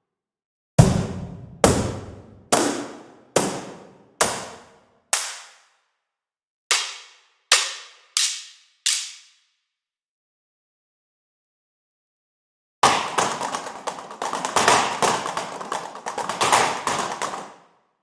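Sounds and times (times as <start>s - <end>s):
cardboard box percussion hits: 0.8s - 5.5s.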